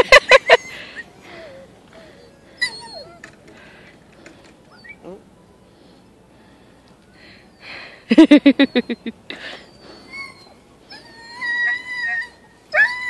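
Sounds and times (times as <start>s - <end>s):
dog whining: 1.4s - 3.4s, 4.7s - 5.2s, 8.6s - 13.0s
dogs yelping: 2.2s - 3.4s, 8.5s - 13.0s.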